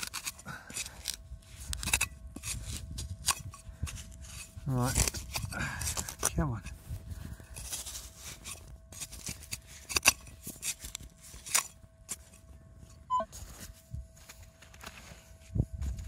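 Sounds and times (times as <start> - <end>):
digging tool scraping soil: 0.0 - 6.4, 7.5 - 12.4
faint metal detector tone: 12.2 - 15.5
short detector beep: 13.1 - 13.4.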